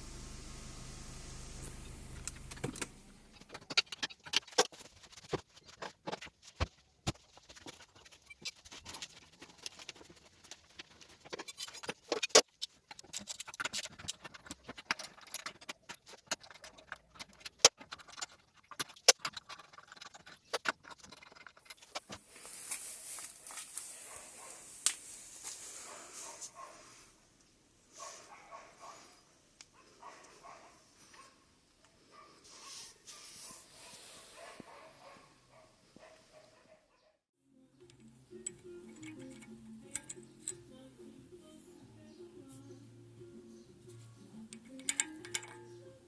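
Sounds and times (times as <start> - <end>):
steady low hum: 0.0 - 3.6
metallic clinks and clicks: 7.9 - 22.1, 37.9 - 40.7, 44.5 - 45.8.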